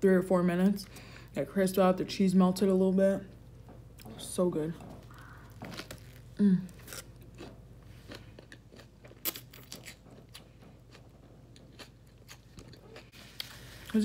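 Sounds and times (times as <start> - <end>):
chewing sandwich crunching: 5.0 - 13.9.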